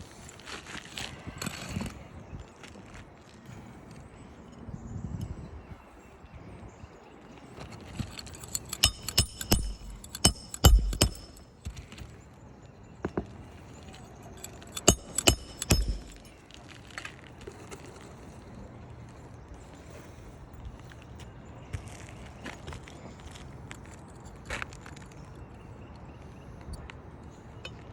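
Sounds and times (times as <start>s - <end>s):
hammer striking nails: 8.3s - 11.5s, 14.4s - 16.3s.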